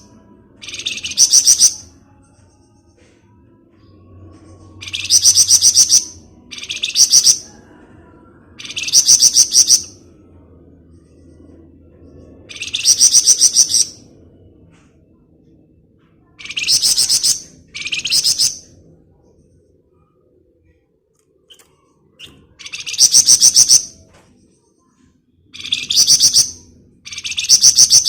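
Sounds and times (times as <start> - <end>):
faint low hum: 0.0 - 28.0
songbird chirping in rapid bursts: 0.6 - 1.9, 4.7 - 7.5, 8.6 - 10.0, 12.5 - 14.0, 16.4 - 18.7, 21.5 - 24.0, 25.6 - 28.0.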